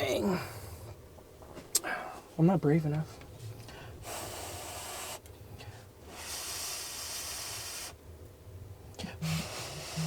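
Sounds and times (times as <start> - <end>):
breath blowing on food: 6.1 - 8.0.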